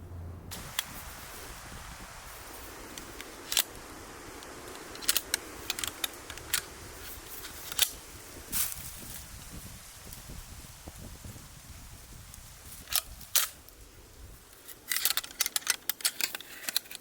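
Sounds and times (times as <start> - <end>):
faint steady hiss: 0.0 - 17.0
wood fire crackling: 0.5 - 17.0
sharp pops and cracks: 2.8 - 9.2, 12.7 - 13.8, 14.5 - 17.0.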